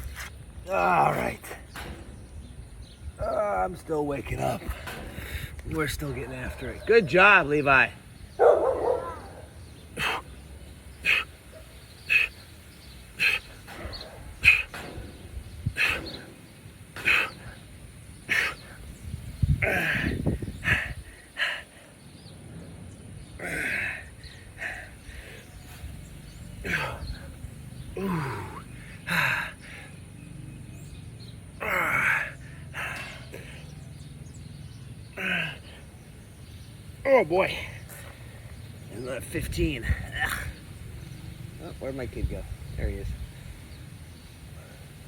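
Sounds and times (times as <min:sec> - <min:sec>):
low outdoor background: 0:00.0 - 0:45.0
animal calling: 0:08.4 - 0:10.4, 0:11.0 - 0:12.4, 0:13.2 - 0:15.0
man exhaling hard with groan: 0:19.4 - 0:21.6.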